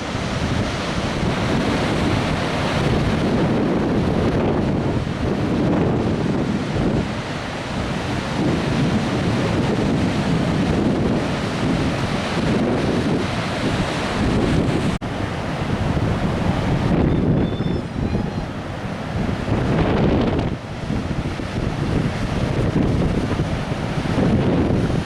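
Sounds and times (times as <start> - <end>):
wind buffeting microphone: 0.0 - 25.0.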